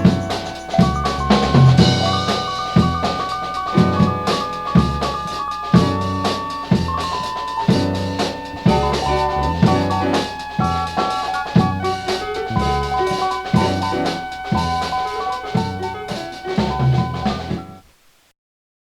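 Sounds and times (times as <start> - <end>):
instrumental music with drums and bass: 0.0 - 17.8.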